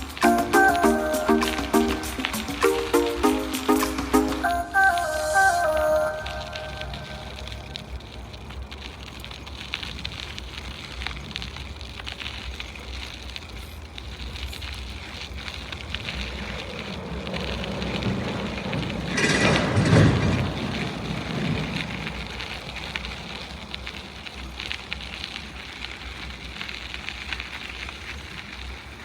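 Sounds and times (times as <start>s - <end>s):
bicycle tyre noise: 0.0s - 29.0s
small crackles: 0.0s - 29.0s
wind on microphone: 15.9s - 23.8s.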